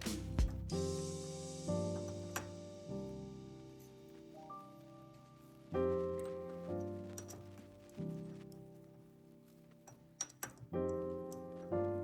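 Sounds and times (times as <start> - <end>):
keyboard chords music: 0.0 - 8.5.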